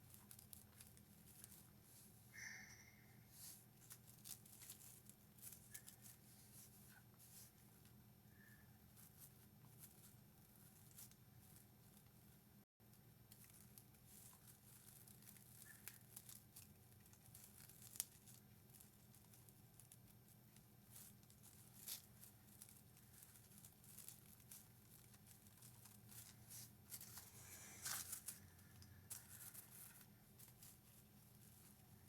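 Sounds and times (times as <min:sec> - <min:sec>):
low steady hum: 0:00.0 - 0:32.0
craft materials crinkling: 0:13.3 - 0:32.0.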